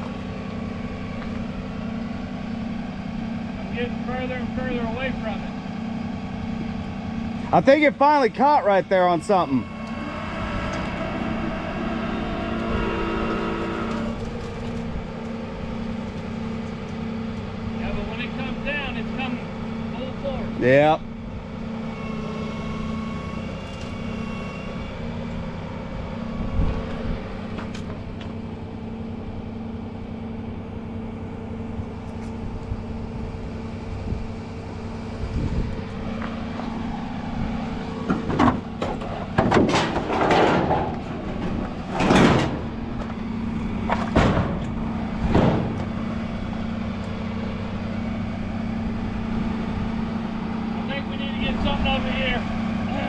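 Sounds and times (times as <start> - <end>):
truck engine running: 0.0 - 53.0
loud scrapes and bangs: 37.9 - 46.3.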